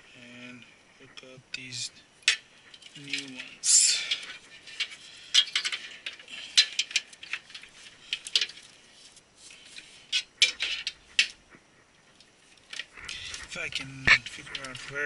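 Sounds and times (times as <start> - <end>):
cable connectors clicking and rattling: 2.2 - 11.4, 12.1 - 15.0.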